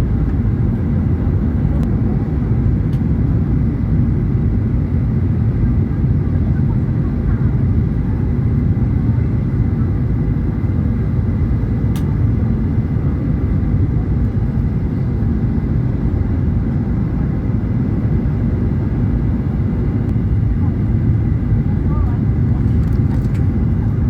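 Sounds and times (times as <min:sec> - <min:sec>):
aircraft engine rumble: 0:00.0 - 0:24.0
brief click: 0:11.9 - 0:12.1.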